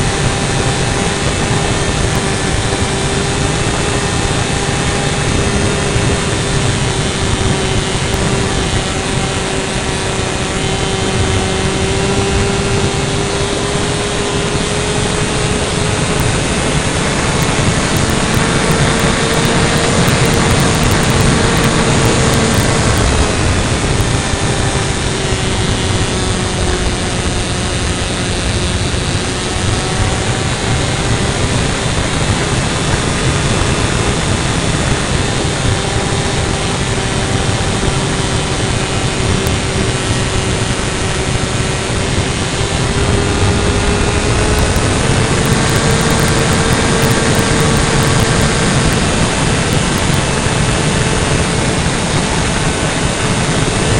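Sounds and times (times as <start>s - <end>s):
model airplane engine: 0.0s - 53.9s
wind rush on microphone: 0.0s - 53.9s.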